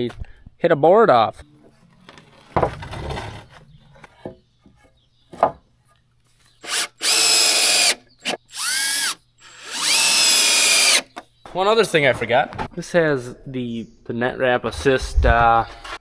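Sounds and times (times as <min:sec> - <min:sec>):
drill motor whining: 0:06.6 - 0:11.1.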